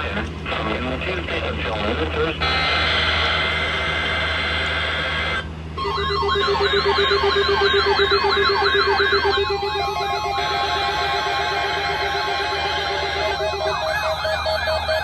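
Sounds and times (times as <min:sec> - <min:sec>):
stepped steady tones: 0:01.0 - 0:15.0
pulsing low tone: 0:02.4 - 0:15.0
siren-like electronic warble: 0:02.4 - 0:15.0
steady electronic tone: 0:02.4 - 0:15.0.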